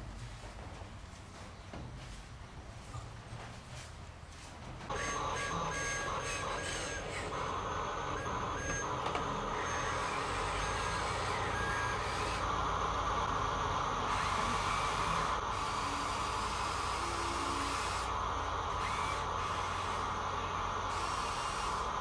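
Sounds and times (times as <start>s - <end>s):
electric motors whirring: 4.9s - 22.0s.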